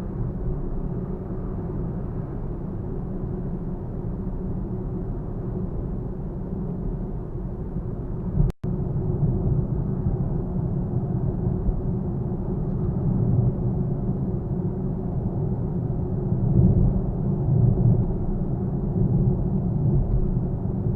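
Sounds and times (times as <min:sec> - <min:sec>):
car road and engine rumble: 0:00.0 - 0:20.9.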